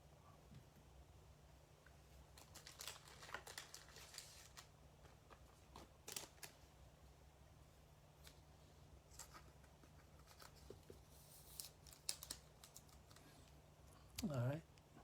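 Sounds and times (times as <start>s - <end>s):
trading cards rustling: 2.3s - 6.6s, 9.1s - 13.6s.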